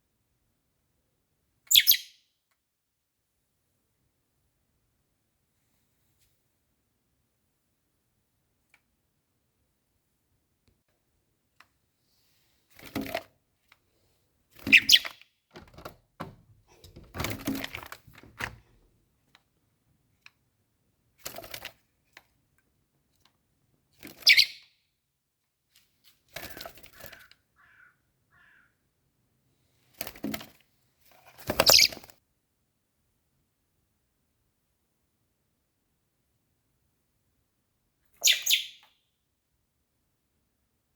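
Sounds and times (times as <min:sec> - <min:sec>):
young blackbird calling: 0:01.7 - 0:02.2, 0:14.6 - 0:15.2, 0:24.2 - 0:24.7, 0:38.2 - 0:38.9
thumps: 0:14.6 - 0:18.8.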